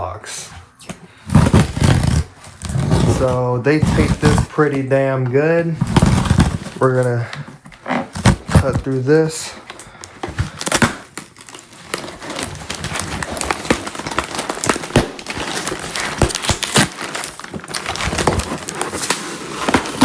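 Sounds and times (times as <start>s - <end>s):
blade cutting packing tape: 1.3s - 4.5s, 10.4s - 20.0s.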